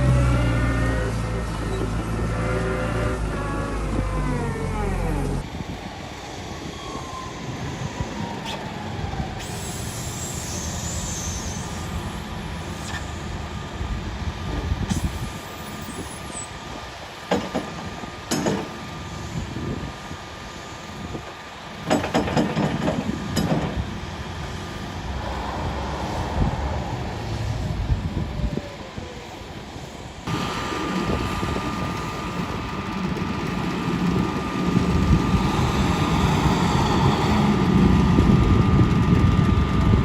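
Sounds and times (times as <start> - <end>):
machine rumbling: 23.6 - 30.4.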